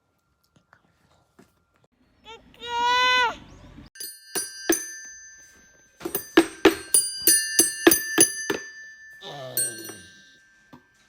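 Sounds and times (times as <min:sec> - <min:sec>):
small bell-like chimes struck: 0:04.0 - 0:11.0.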